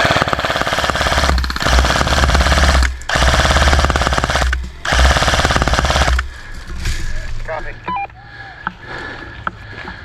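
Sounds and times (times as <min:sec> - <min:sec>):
airsoft gun firing full-auto: 0:00.0 - 0:06.3.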